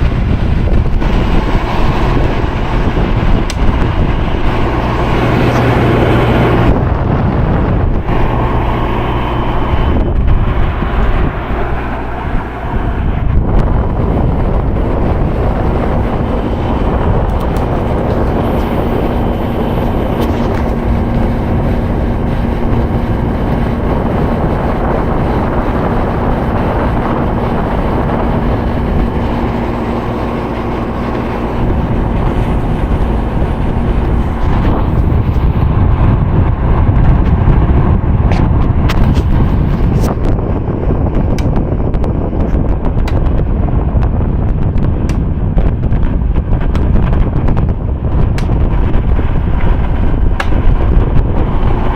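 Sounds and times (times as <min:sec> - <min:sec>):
air conditioner fan blowing: 0:00.0 - 0:51.9
steady hum: 0:00.0 - 0:51.9.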